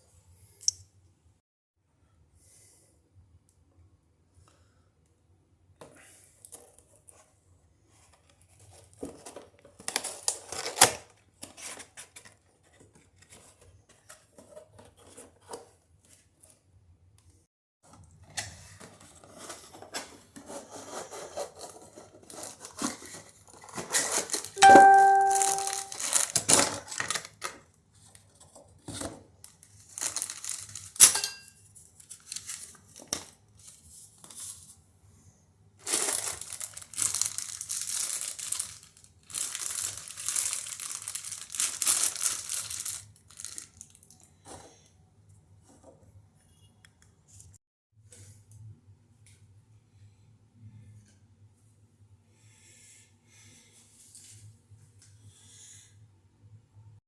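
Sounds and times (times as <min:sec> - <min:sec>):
plastic crinkling: 0:22.2 - 0:27.5, 0:29.6 - 0:31.1, 0:35.8 - 0:44.2.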